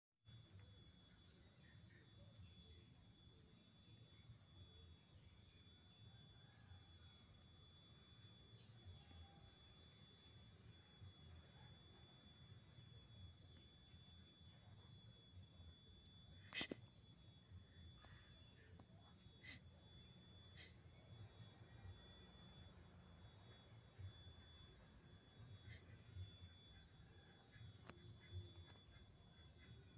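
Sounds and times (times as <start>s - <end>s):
high-pitched electronic whine: 0.3s - 29.9s
faint ticks: 27.5s - 29.1s.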